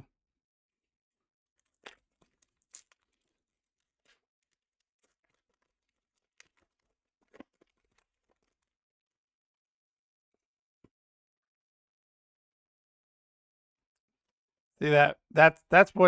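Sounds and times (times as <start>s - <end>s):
foil wrapper tearing and crinkling: 1.6s - 8.7s.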